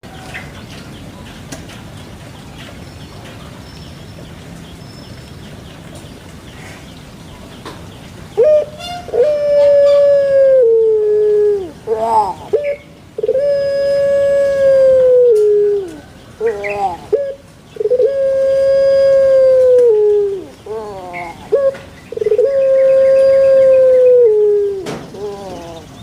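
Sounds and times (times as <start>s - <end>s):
bird calling in long notes: 8.3s - 26.0s.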